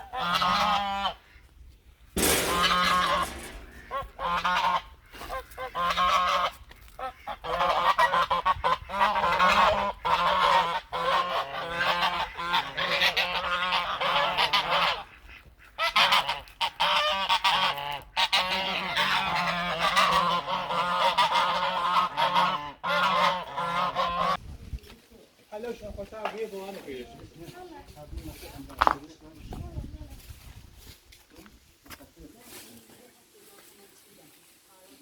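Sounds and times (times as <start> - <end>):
farm fowl honking: 0.0 - 1.5, 2.2 - 24.4.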